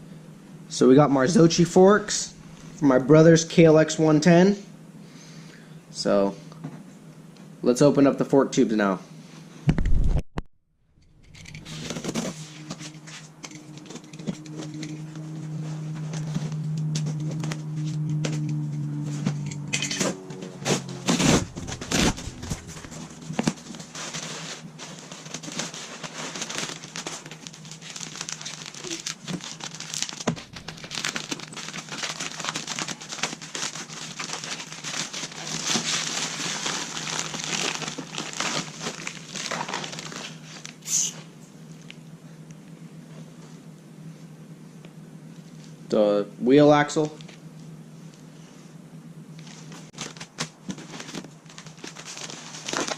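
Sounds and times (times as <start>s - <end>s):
steady low hum: 0.0s - 10.2s, 10.9s - 52.9s
packaging crinkling and rustling: 20.5s - 40.8s, 49.4s - 52.9s.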